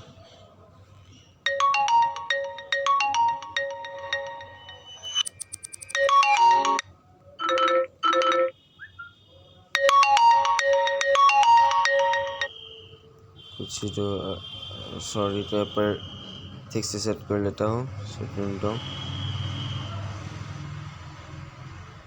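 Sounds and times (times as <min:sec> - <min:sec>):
phone ringtone melody: 0:01.5 - 0:08.6, 0:09.8 - 0:12.5.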